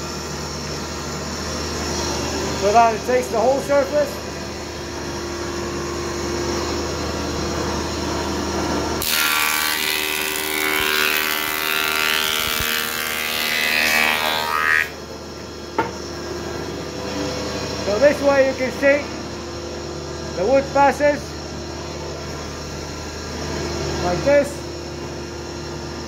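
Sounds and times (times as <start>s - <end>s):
woodworking machine running: 0.0s - 26.0s
board planing noise: 8.9s - 15.0s.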